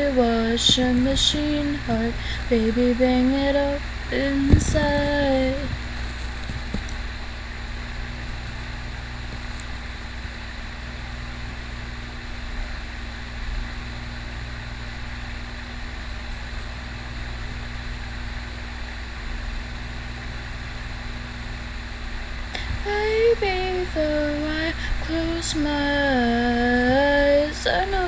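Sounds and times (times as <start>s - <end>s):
even hiss: 0.0s - 10.9s, 22.3s - 28.0s
low mechanical hum: 0.0s - 28.0s.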